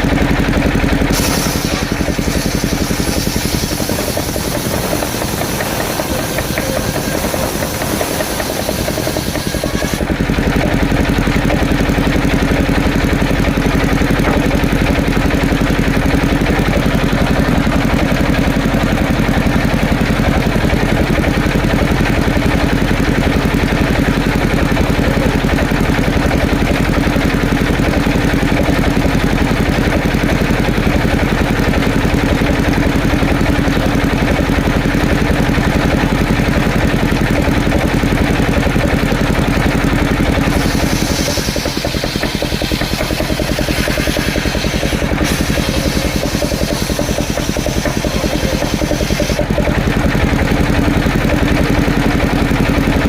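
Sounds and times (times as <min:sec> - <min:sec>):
small engine idling: 0:00.0 - 0:53.0.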